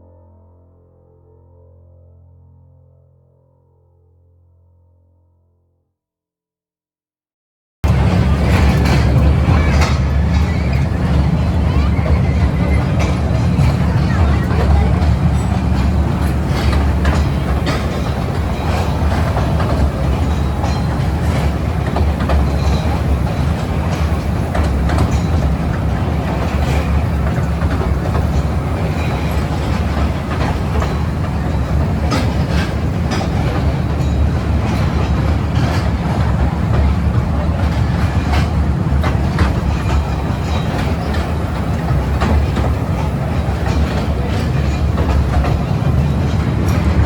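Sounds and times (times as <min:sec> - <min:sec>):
toy train low rumble: 0:07.8 - 0:47.0
train wheels clicking on rails: 0:07.8 - 0:47.0.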